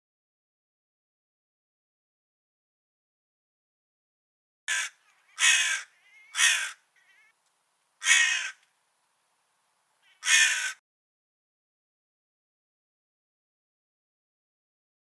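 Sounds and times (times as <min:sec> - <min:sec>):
crow cawing: 0:04.7 - 0:07.4, 0:08.0 - 0:08.7, 0:10.0 - 0:10.8.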